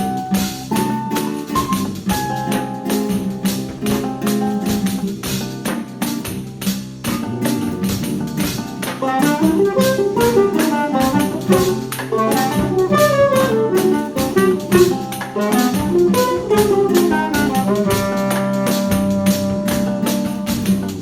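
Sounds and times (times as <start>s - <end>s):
mandolin melody: 0.0s - 21.0s
nylon-string guitars: 0.0s - 21.0s
tambourine steady beat: 0.0s - 21.0s
tuba bass: 0.0s - 21.0s
clarinet melody: 9.0s - 21.0s.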